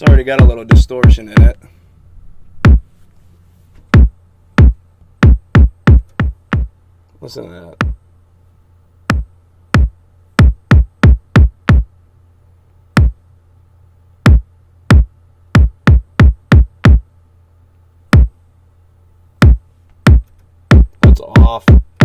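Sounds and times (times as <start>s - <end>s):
distorted kick drum hits: 0.0s - 1.6s, 2.6s - 2.9s, 3.9s - 6.8s, 7.8s - 8.0s, 9.1s - 11.9s, 13.0s - 13.2s, 14.2s - 17.0s, 18.1s - 18.4s, 19.4s - 22.0s.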